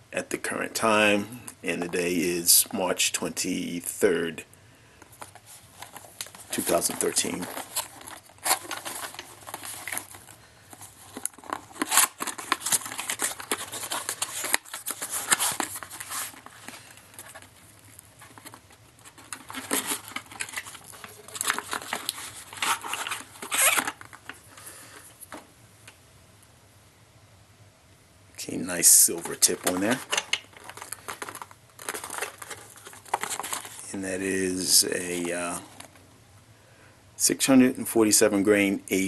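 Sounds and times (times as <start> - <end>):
ammunition box rustling and tearing: 5.1 - 24.6, 28.8 - 36.0.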